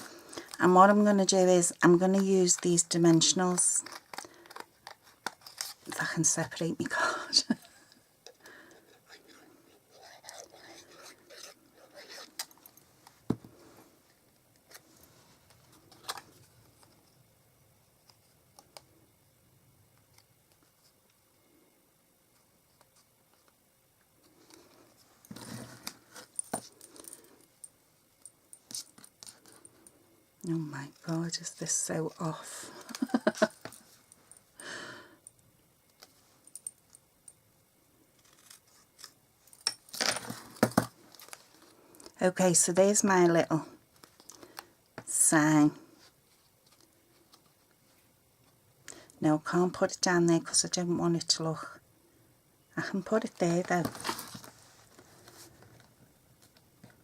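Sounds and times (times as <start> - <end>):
card and paper rustling: 0.0 - 6.6, 53.2 - 57.0.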